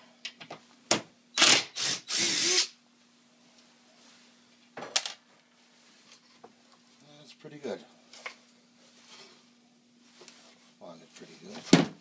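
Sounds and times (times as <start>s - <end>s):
power drill bursts: 1.4s - 2.8s.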